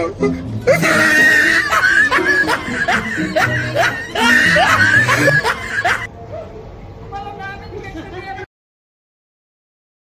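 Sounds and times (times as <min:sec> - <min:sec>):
comedy music with rising swoops: 0:00.0 - 0:06.0.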